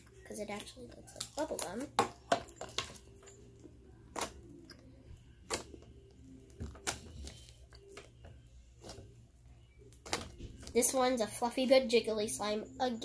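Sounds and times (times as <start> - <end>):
faint background music: 0.0 - 13.0
slime clicking and popping: 5.4 - 5.9.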